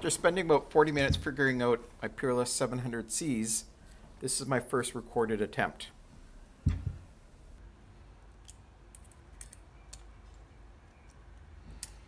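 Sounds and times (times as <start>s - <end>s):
metallic clicks of lock picking: 8.4s - 10.1s.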